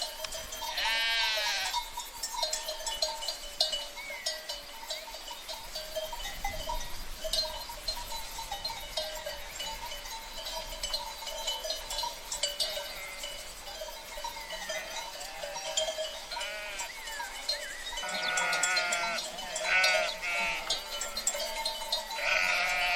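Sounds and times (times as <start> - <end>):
small bells clinking: 0.0 - 22.9
sheep bleating: 0.7 - 1.8, 14.8 - 16.9, 18.0 - 21.5, 22.2 - 22.9.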